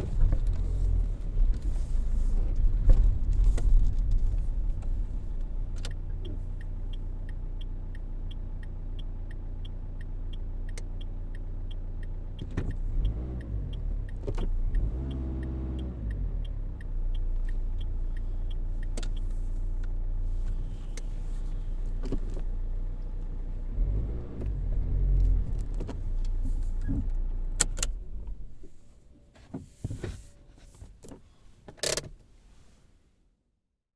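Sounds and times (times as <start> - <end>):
car engine running: 0.0 - 29.2
regular ticking: 4.1 - 21.2
sharp clicks and knocks: 12.4 - 17.6.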